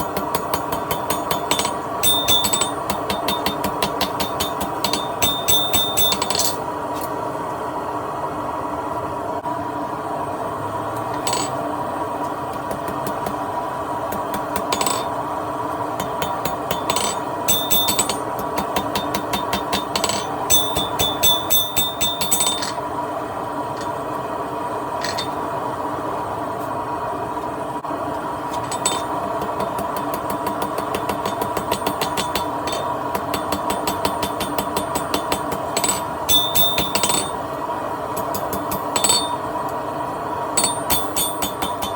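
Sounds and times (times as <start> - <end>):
hammer striking steel on anvil: 0.0 - 6.6, 11.2 - 11.6, 14.1 - 15.2, 16.0 - 22.9, 25.0 - 25.4, 28.6 - 37.4, 38.2 - 39.5, 40.6 - 41.9
steady hum: 0.0 - 41.9.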